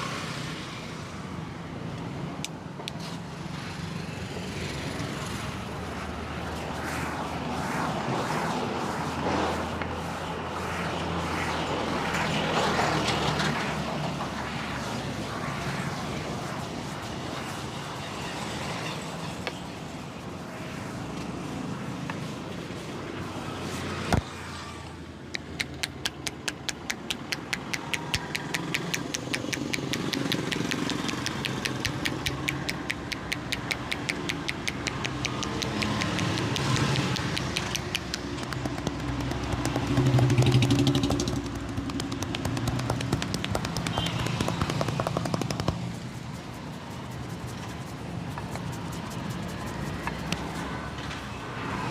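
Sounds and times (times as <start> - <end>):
low street rumble: 0.7 - 51.9
rapid hand slaps: 25.4 - 50.6.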